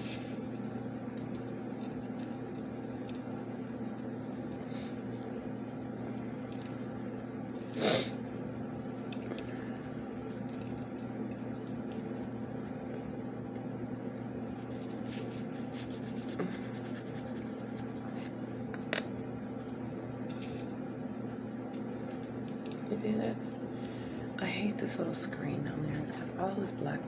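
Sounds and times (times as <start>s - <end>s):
low electrical hum: 0.0s - 27.0s
small ticks and clicks: 0.4s - 7.2s, 8.4s - 12.5s, 21.7s - 24.0s.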